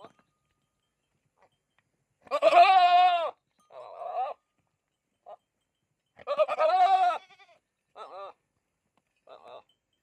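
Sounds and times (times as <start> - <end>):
goat bleating: 2.2 - 4.4, 6.2 - 8.4.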